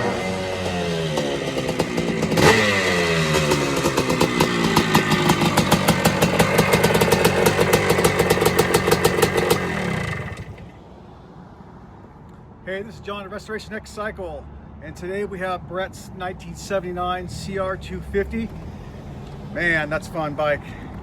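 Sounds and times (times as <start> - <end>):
motorcycle engine revving: 0.0 - 10.8
sharp engine crack: 0.0 - 10.8.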